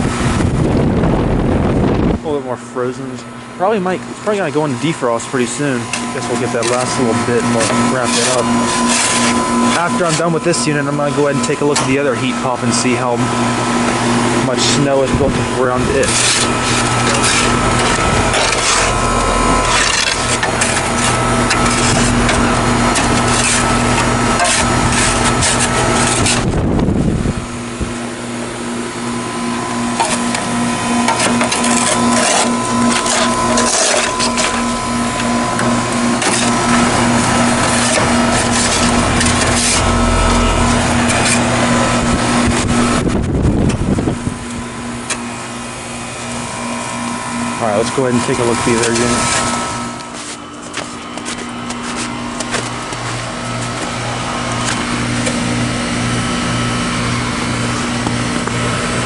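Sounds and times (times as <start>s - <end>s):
heat pump unit humming: 0.0s - 59.0s
scraping and crunching ice: 5.4s - 12.1s, 15.7s - 26.4s, 31.0s - 34.7s, 35.6s - 36.8s, 37.4s - 40.0s, 48.2s - 54.0s.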